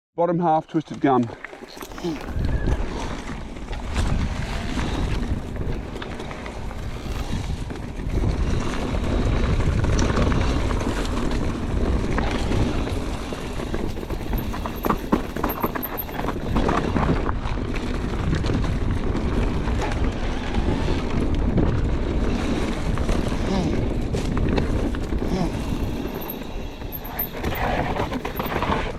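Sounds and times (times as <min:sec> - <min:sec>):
rumble and rattling over rough ground: 0:01.5 - 0:28.9
wind rushing over microphone: 0:02.2 - 0:28.9
sharp rattles and knocks: 0:13.6 - 0:16.7, 0:25.7 - 0:28.9.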